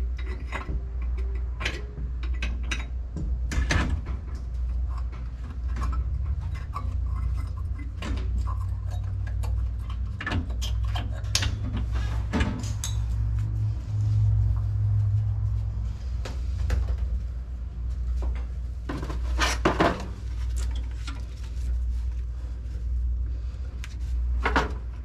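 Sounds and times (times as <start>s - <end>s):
tools and metal parts clinking: 0.0s - 13.2s
steady low hum: 0.0s - 25.0s.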